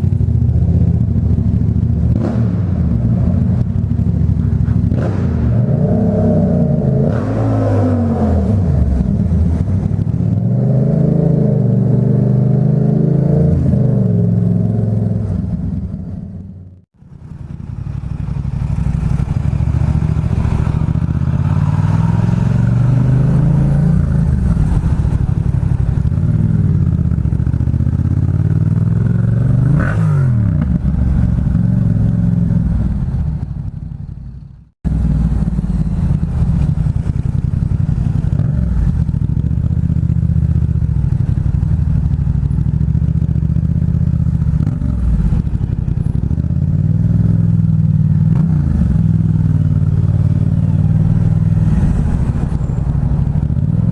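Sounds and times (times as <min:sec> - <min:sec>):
motorcycle engine revving: 0:00.0 - 0:53.9.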